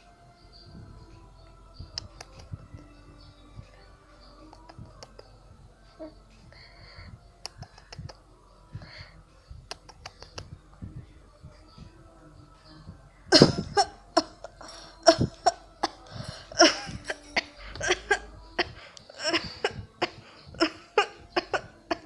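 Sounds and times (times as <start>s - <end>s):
person coughing: 13.3s - 22.0s.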